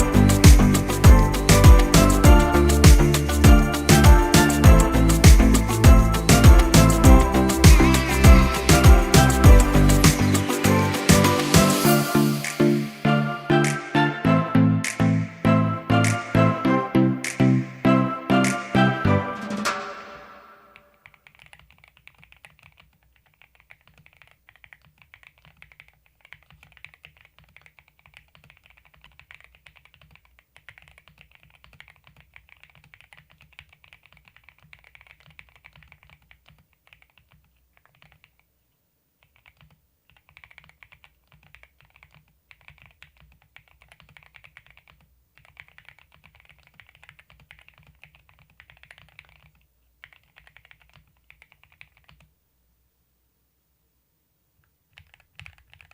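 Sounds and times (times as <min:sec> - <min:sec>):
mechanical keyboard typing: 0:20.6 - 0:38.4, 0:39.2 - 0:52.3, 0:54.9 - 0:55.9.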